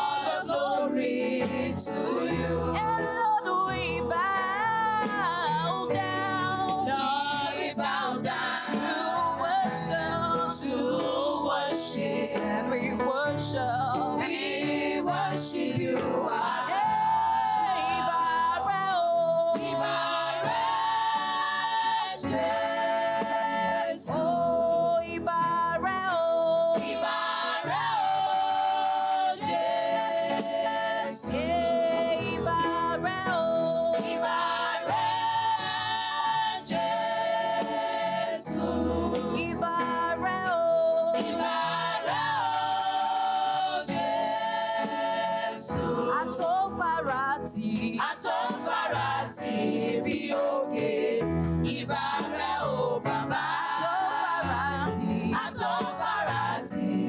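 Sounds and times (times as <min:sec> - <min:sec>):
women's choir singing: 0:00.0 - 0:57.0.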